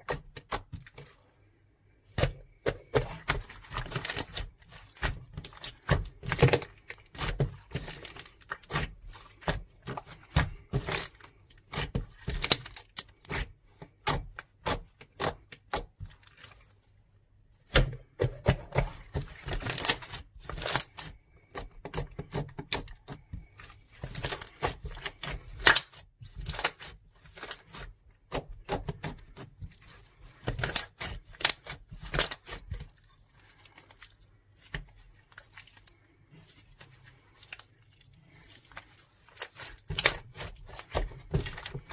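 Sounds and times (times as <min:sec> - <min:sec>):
clicking and crinkling crackles: 0:18.4 - 0:41.9.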